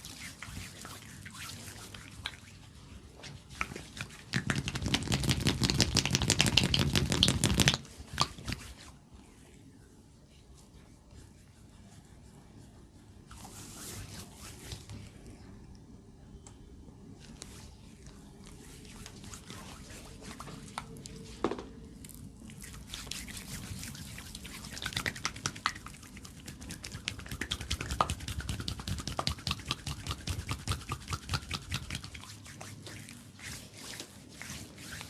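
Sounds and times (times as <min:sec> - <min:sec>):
wet slaps on oiled skin: 0:03.6 - 0:08.6.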